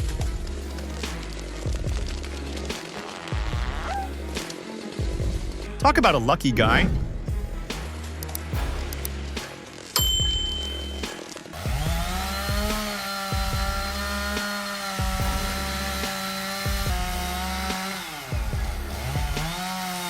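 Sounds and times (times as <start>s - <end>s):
music with heavy low beat: 0.0s - 19.9s
chainsaw revving: 11.5s - 20.0s.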